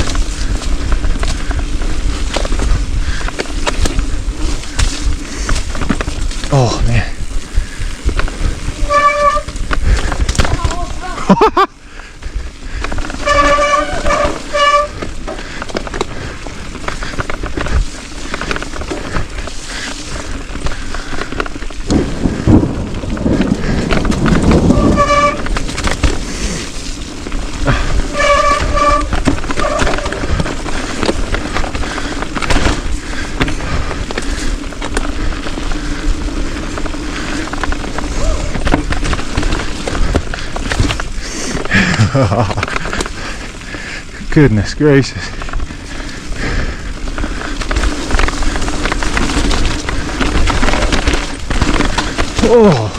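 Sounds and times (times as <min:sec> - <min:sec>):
bike rattling over rocks: 0:00.0 - 0:52.9
bike disc brakes squealing: 0:08.3 - 0:11.2, 0:13.0 - 0:15.4, 0:24.4 - 0:31.0, 0:36.1 - 0:40.0.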